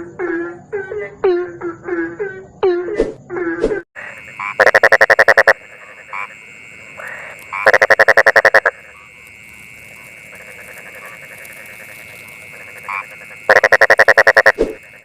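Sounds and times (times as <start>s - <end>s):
frog croaking in pulses: 4.0s - 15.0s.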